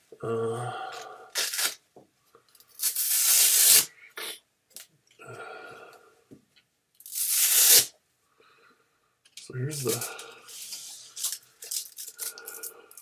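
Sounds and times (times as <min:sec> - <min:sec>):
short scratchy velcro pulls: 0:01.3 - 0:01.8, 0:02.7 - 0:03.9, 0:07.0 - 0:07.9
velcro ripping: 0:01.3 - 0:01.8, 0:02.7 - 0:03.9, 0:07.0 - 0:07.9.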